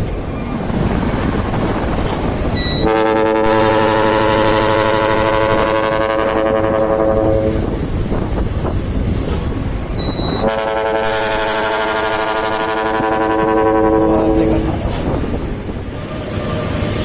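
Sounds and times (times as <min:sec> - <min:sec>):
truck engine rumble: 0:00.0 - 0:17.0
truck air horn chord: 0:02.8 - 0:07.6, 0:10.4 - 0:14.7.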